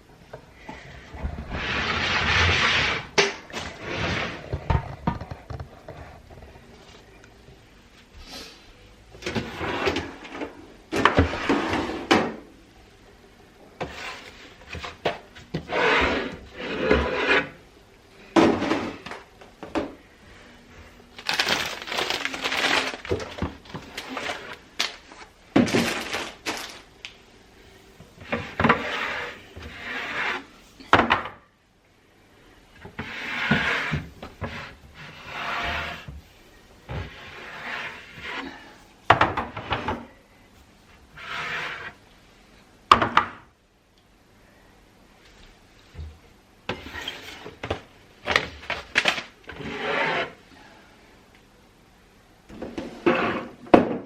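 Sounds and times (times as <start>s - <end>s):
kitchen items clattering: 18.3s - 20.0s, 21.2s - 27.0s.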